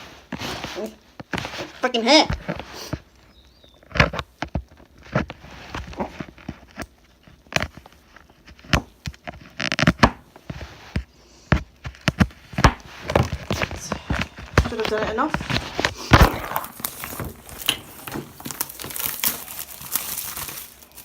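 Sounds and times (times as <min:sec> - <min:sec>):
plastic rustling: 0:00.0 - 0:11.1, 0:11.7 - 0:21.0.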